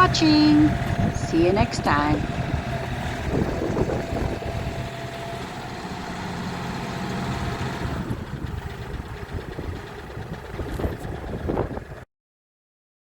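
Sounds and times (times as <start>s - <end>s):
vehicle engine idling: 0.0s - 12.0s.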